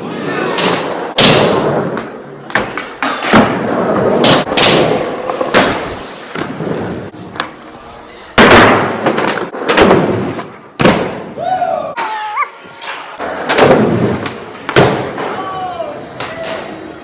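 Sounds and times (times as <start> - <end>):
skateboard rolling: 1.6 - 8.0.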